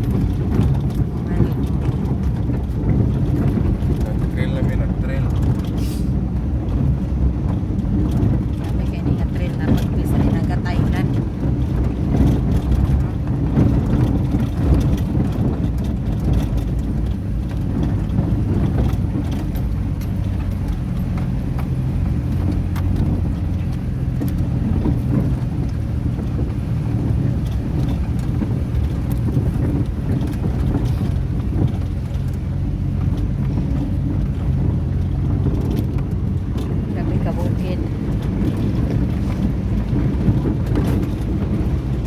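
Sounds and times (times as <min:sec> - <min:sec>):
boat engine droning: 0:08.7 - 0:42.0.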